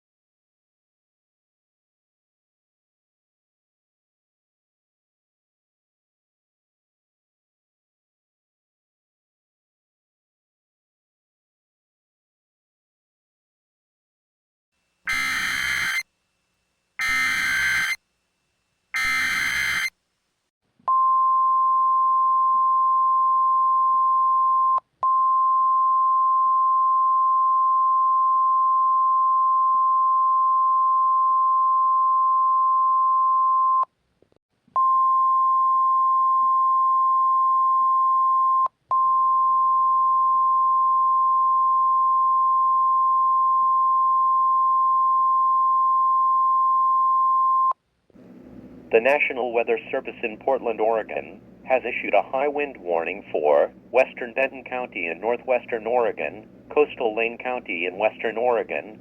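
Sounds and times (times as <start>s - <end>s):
steady high-pitched alarm tone: 15.1s - 16.1s, 17.0s - 18.0s, 19.0s - 19.9s.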